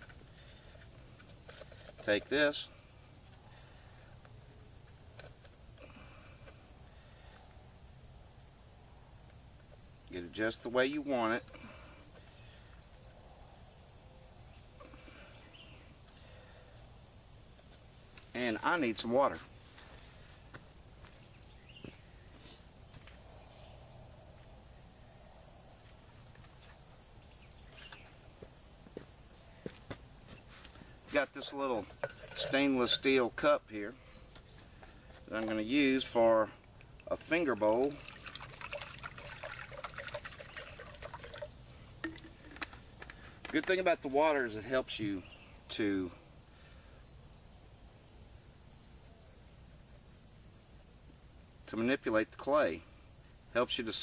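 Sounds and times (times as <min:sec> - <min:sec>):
insects trilling: 0:00.0 - 0:54.0
handling clicks and knocks: 0:42.0 - 0:43.8.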